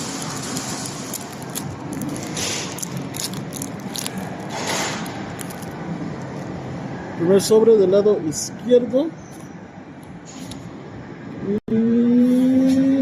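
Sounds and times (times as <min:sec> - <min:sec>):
cards and foil wrappers rustling: 0:00.0 - 0:05.8.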